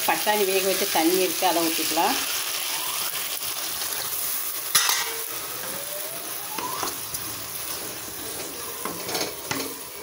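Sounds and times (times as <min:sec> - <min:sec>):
water hissing in hot pan: 0:00.0 - 0:10.0
rising pouring tone: 0:05.1 - 0:07.1.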